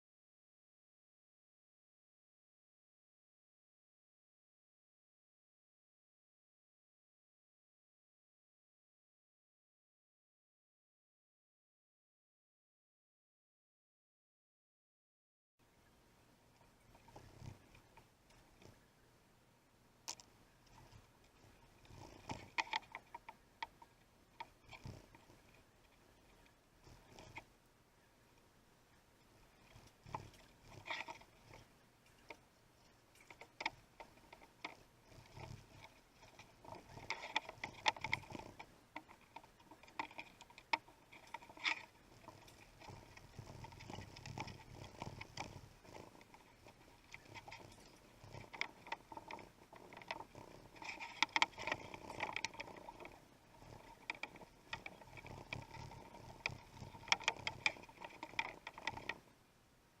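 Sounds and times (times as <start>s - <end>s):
scraping rustles: 29.3s - 59.3s.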